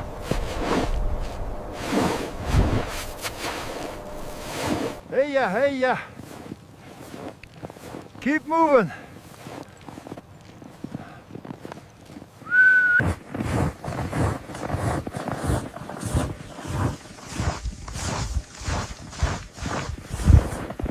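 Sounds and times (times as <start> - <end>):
footsteps in snow: 0.0 - 20.9
short whistle: 12.4 - 13.1.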